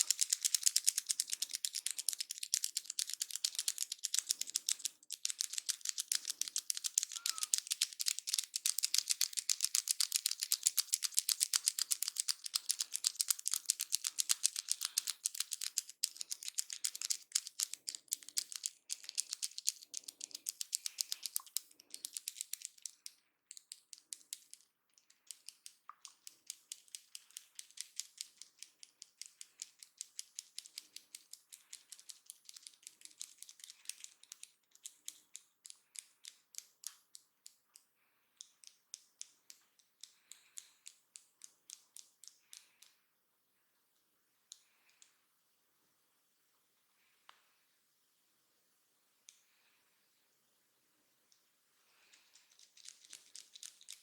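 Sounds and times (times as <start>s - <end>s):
sharp high clicks: 0.0s - 23.0s.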